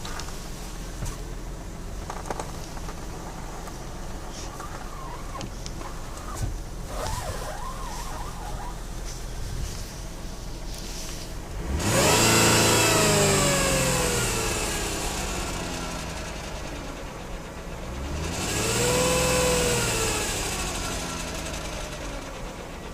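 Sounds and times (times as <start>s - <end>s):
car engine revving: 2.1s - 22.9s
thin whine: 4.4s - 11.3s.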